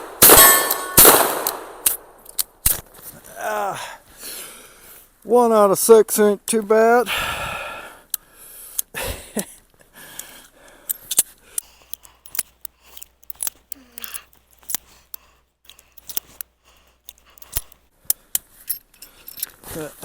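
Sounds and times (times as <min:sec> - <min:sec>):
cartridges being handled: 0:10.2 - 0:19.6.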